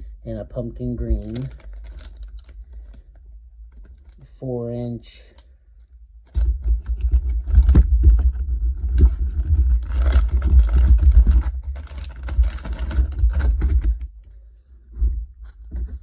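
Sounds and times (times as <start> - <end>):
plastic packaging crinkling: 1.0 - 4.4, 6.3 - 14.0.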